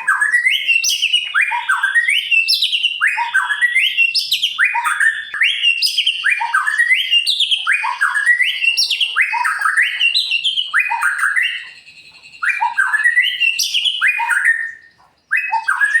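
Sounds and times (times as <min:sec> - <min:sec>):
songbird singing: 0:00.0 - 0:16.0.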